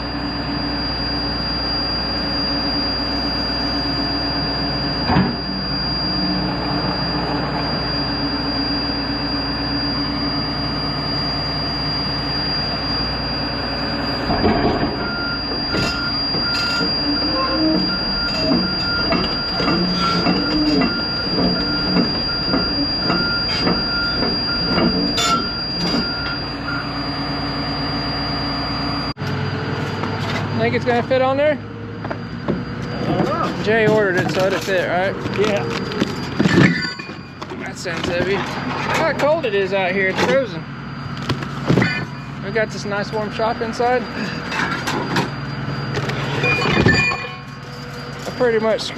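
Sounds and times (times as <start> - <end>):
steel tracks squealing and clanking: 0.0 - 29.0, 30.0 - 48.9
excavator engine running: 0.0 - 48.9
high squeak: 11.2 - 29.1, 32.8 - 40.5, 41.8 - 42.4, 43.3 - 48.8.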